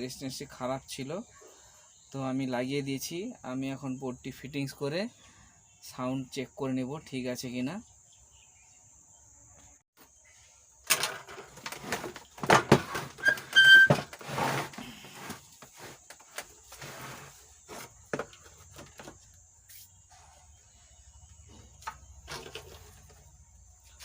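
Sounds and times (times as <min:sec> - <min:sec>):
brief squeak: 0:13.2 - 0:14.1.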